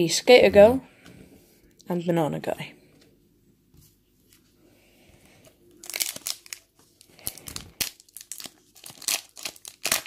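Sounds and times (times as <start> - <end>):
card pack wrapper tearing and crinkling: 5.7 - 10.0.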